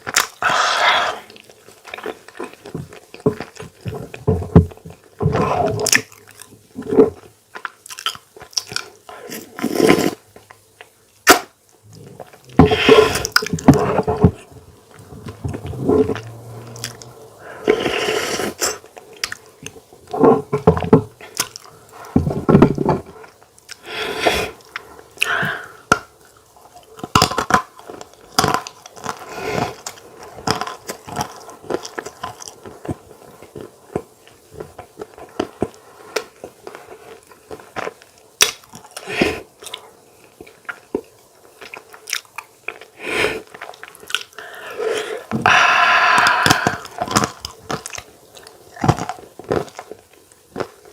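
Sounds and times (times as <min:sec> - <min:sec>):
person chewing: 0:07.2 - 0:10.2, 0:10.8 - 0:20.0, 0:21.2 - 0:50.9
mouth clicks: 0:44.2 - 0:47.4.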